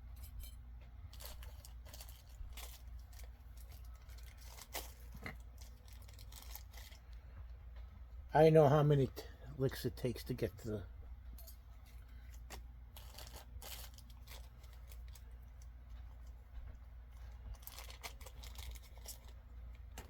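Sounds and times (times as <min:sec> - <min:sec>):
packaging crinkling and tearing: 0:01.1 - 0:07.2, 0:12.2 - 0:16.4, 0:17.2 - 0:20.0.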